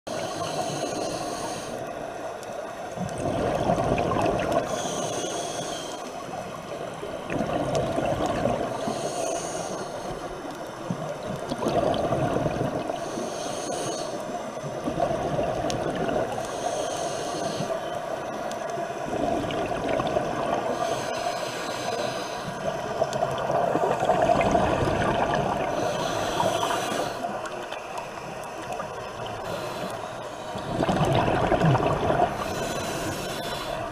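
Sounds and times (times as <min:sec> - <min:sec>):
regulator hissing inhale: 0:00.1 - 0:01.9, 0:04.6 - 0:06.3, 0:08.6 - 0:10.6, 0:12.9 - 0:14.6, 0:16.3 - 0:18.2, 0:20.6 - 0:22.9, 0:25.6 - 0:27.5, 0:29.2 - 0:30.7, 0:32.3 - 0:33.9
exhaled bubbles rumbling: 0:03.0 - 0:04.7, 0:06.8 - 0:08.7, 0:10.9 - 0:13.0, 0:14.7 - 0:16.4, 0:19.0 - 0:20.7, 0:22.8 - 0:25.8, 0:30.5 - 0:33.2.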